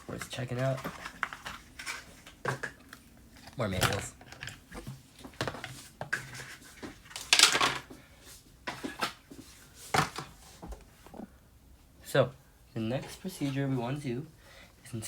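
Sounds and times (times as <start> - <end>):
paper rustle: 0.1 - 2.5.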